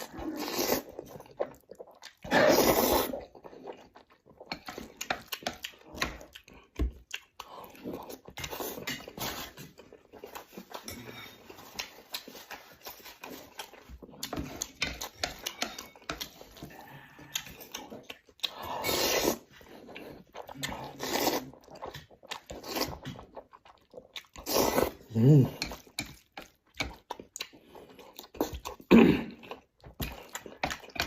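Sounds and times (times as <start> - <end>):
slurping noodles: 0.0 - 6.4, 16.2 - 26.0
person chewing noodles: 0.0 - 31.0.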